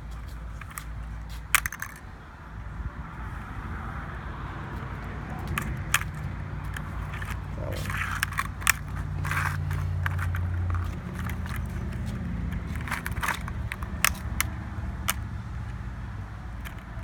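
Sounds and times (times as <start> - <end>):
plastic keycaps clicking off: 1.5 - 2.0, 5.4 - 15.4, 16.6 - 17.0.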